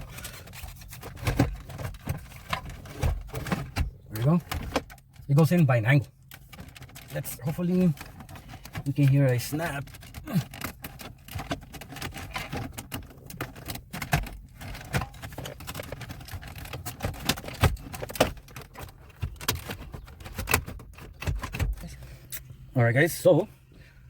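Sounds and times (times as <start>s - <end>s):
hard plastic clicks and knocks: 7.9s - 21.8s.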